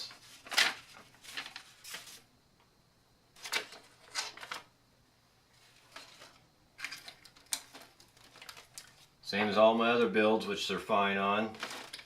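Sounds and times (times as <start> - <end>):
rustling and clicking handling sounds: 0.0 - 2.2, 3.4 - 4.7, 5.5 - 9.6, 11.4 - 12.0.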